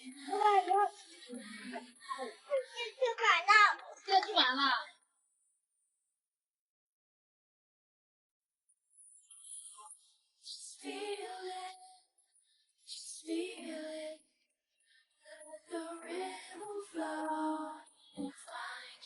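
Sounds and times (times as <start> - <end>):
high childlike voice singing: 0.0 - 3.2.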